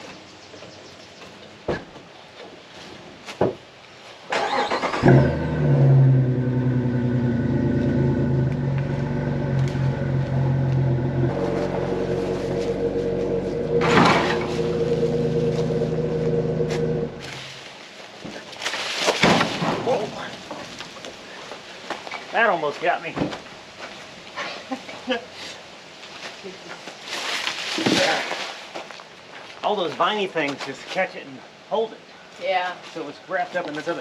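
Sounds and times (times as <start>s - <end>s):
engine cranking and starting: 4.3s - 7.2s, 8.0s - 17.4s
engine idling: 5.0s - 17.5s.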